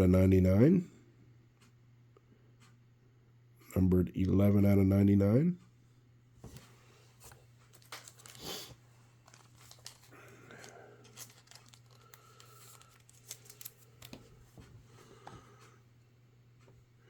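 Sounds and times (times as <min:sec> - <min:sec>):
faint steady hum: 0:00.0 - 0:17.0
trading cards rustling: 0:06.6 - 0:14.8
small clicks and ticks: 0:09.3 - 0:14.2.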